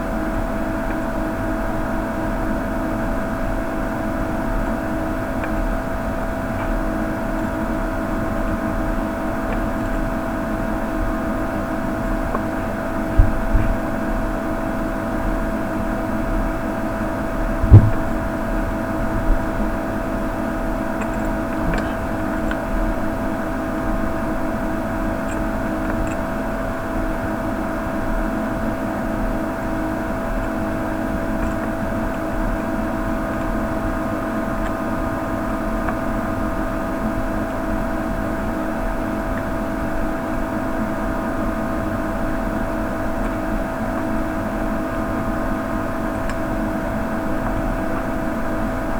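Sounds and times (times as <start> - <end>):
motor hum with whine: 0.0 - 48.9
low knocks on bench: 17.6 - 18.2.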